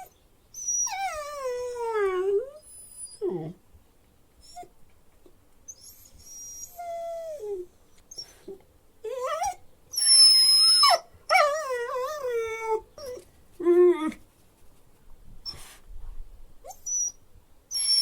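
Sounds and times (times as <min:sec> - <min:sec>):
dog whimpering: 0:00.0 - 0:03.6, 0:05.7 - 0:14.2, 0:16.6 - 0:18.0
dog whining: 0:00.0 - 0:03.6, 0:04.4 - 0:04.8, 0:05.7 - 0:14.2, 0:16.6 - 0:18.0.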